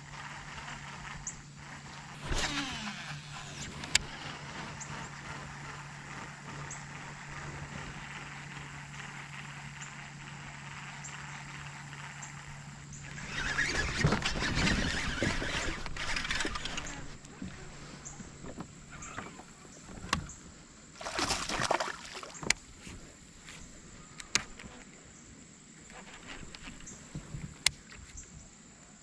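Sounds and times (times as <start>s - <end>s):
electric trolling motor humming: 0.0s - 20.2s.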